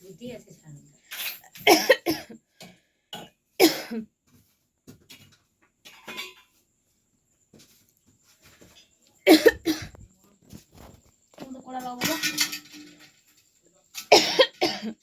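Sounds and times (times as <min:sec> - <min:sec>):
person coughing: 0:01.7 - 0:02.3, 0:03.6 - 0:04.0, 0:09.3 - 0:10.0, 0:14.1 - 0:15.0.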